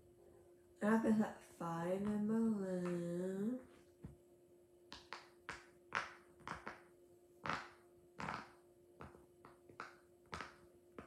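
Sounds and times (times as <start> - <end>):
plastic fidget toy popping: 4.9 - 11.0.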